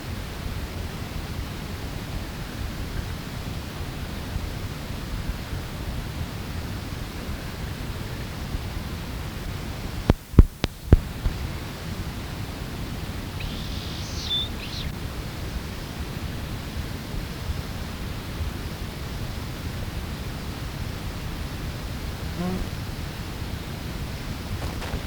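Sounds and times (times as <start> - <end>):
low rumble and hiss: 0.0 - 25.0
faint high bird call: 13.3 - 15.0.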